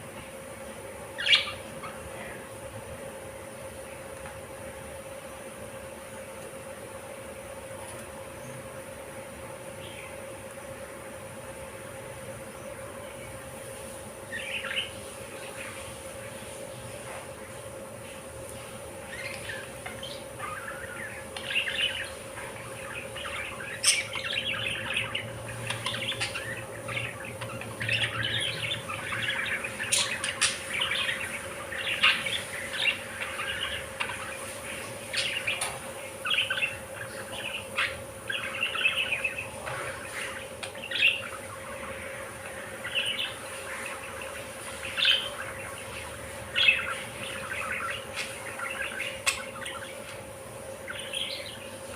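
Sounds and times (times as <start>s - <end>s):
faint steady hum: 0.0s - 51.9s
budgerigars chirping: 1.2s - 2.4s, 14.3s - 15.9s, 19.0s - 51.9s.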